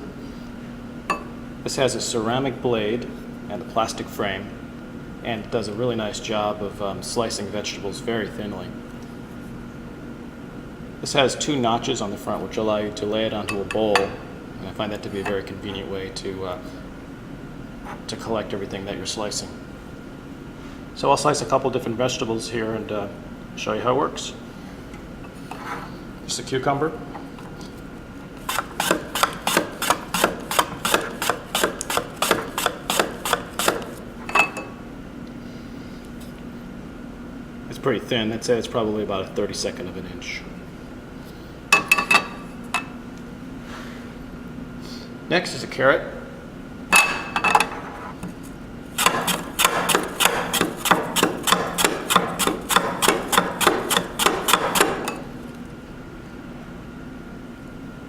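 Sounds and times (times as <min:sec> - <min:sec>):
mandoline slicing cucumber: 0:28.4 - 0:34.0, 0:49.0 - 0:55.2.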